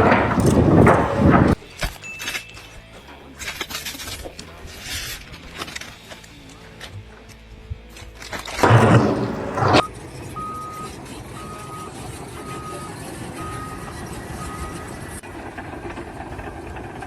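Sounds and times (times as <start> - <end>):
construction site noise: 0.0 - 17.0
reversing alarm beeping: 8.6 - 15.2
engine running: 8.6 - 17.0.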